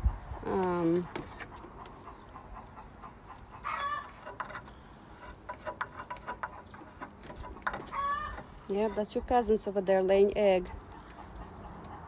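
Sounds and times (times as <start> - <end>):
chickens clucking: 1.3 - 4.3, 10.8 - 12.0.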